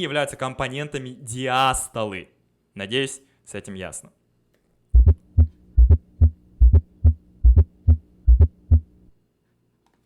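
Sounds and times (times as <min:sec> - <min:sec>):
faint steady hum: 0:00.0 - 0:10.0
heartbeat thumps: 0:05.0 - 0:08.9.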